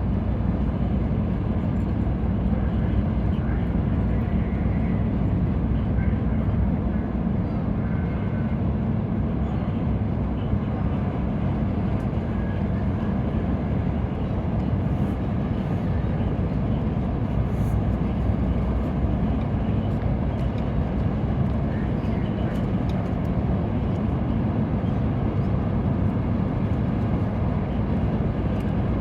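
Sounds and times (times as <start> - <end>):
ferry engines droning: 0.0 - 29.0.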